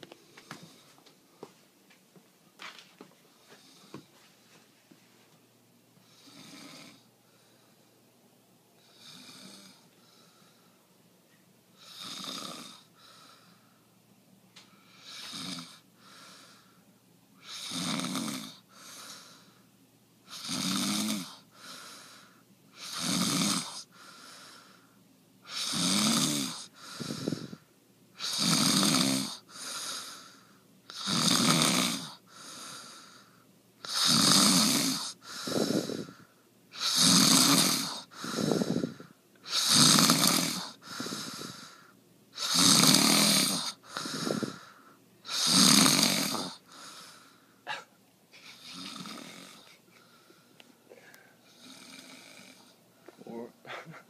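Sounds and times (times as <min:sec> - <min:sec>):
person snoring heavily: 0:06.1 - 0:07.1, 0:08.8 - 0:09.8, 0:11.8 - 0:13.4, 0:14.9 - 0:16.7, 0:17.4 - 0:19.6, 0:20.3 - 0:24.8, 0:25.4 - 0:27.6, 0:28.2 - 0:54.0.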